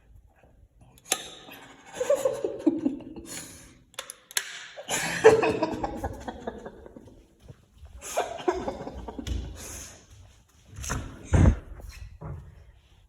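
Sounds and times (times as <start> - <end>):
person laughing: 1.8 - 3.6, 4.8 - 7.3, 8.0 - 9.8.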